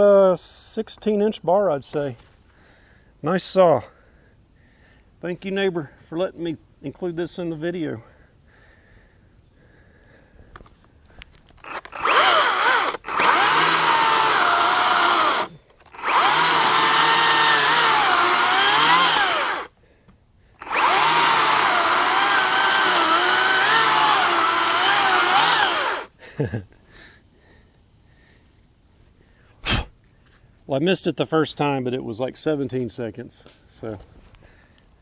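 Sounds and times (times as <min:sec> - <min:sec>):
chainsaw cutting through log: 0:11.6 - 0:19.7, 0:20.6 - 0:26.1.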